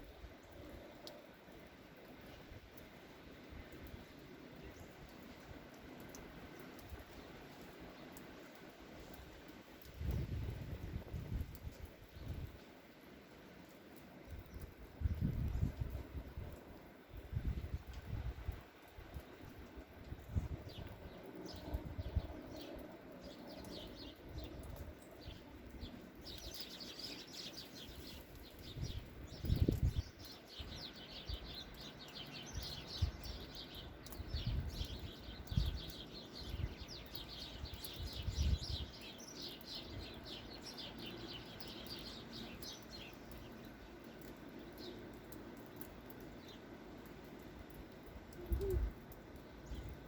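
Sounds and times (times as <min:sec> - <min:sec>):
small birds twittering: 0:20.2 - 0:50.0.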